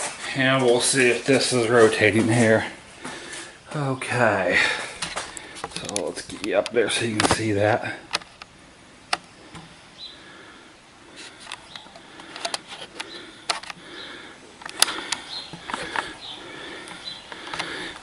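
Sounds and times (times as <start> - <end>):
camera handling clicks and rustles: 8.1 - 8.5, 11.2 - 13.8, 14.6 - 16.1.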